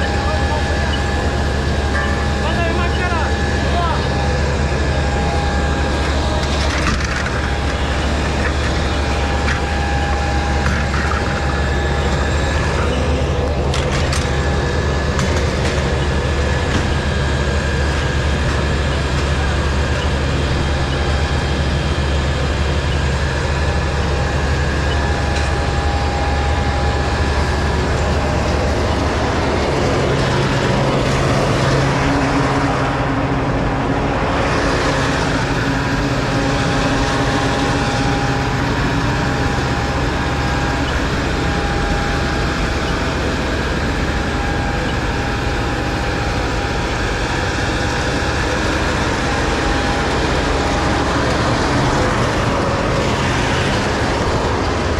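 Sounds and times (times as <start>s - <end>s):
fire engine motor droning: 0.0s - 54.9s.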